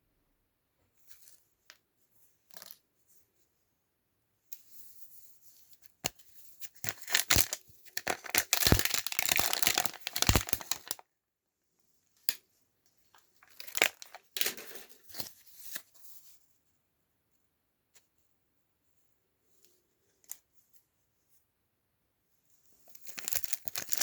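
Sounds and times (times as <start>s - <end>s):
packaging tearing and crinkling: 6.8s - 11.0s, 13.5s - 15.3s, 23.0s - 24.0s.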